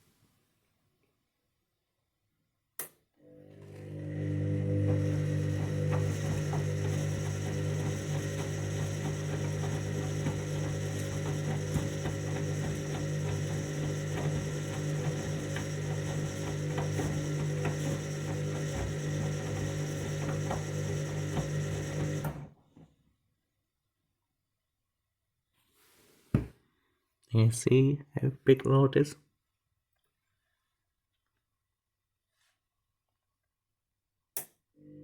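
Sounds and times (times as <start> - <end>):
washing machine motor hum: 3.2 - 22.6.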